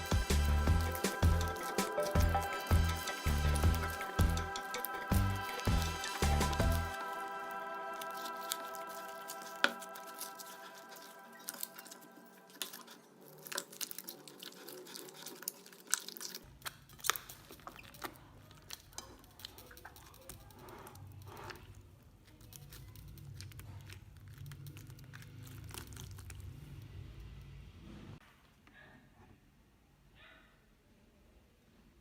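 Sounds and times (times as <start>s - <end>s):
slime sticky clicks and crackles: 8.0s - 26.5s.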